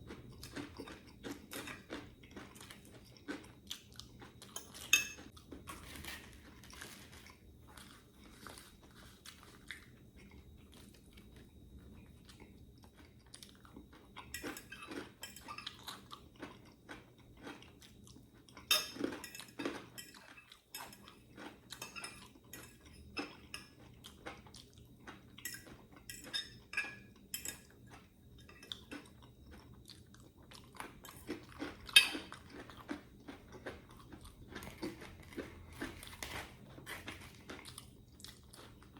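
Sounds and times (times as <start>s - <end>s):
chewing and crunching food: 0.0s - 38.9s
cutlery clinking on a plate: 4.5s - 6.4s, 14.2s - 16.0s, 18.6s - 21.2s, 21.8s - 23.8s, 25.4s - 27.8s.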